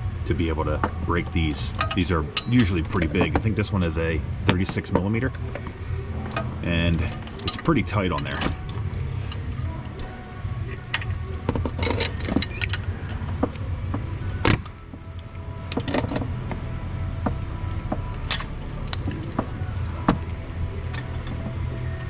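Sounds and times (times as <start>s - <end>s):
steady low hum: 0.0s - 22.0s
metal tools clinking: 0.8s - 3.7s, 4.5s - 14.0s, 17.7s - 22.0s.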